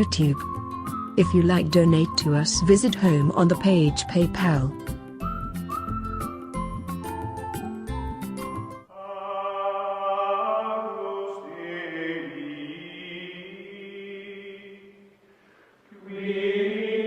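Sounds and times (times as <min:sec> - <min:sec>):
choral voices singing held notes: 0:08.9 - 0:15.2, 0:15.9 - 0:17.0.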